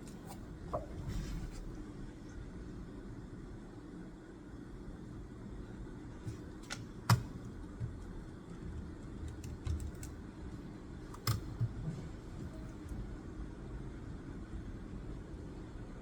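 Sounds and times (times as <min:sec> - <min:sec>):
low steady hum: 0:00.0 - 0:16.0
clicks and taps of desk work: 0:06.3 - 0:08.1.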